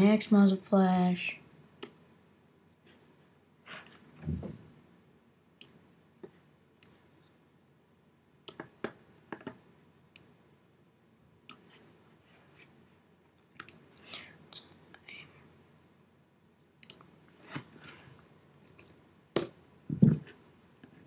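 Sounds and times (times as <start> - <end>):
computer mouse clicks: 5.6 - 5.8, 8.4 - 8.8, 11.5 - 11.7, 13.6 - 14.1, 16.8 - 17.1.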